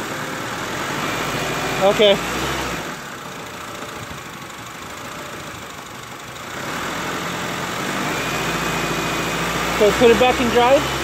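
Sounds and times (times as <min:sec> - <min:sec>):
car engine idling: 0:00.0 - 0:11.0
engine knock: 0:03.0 - 0:06.7.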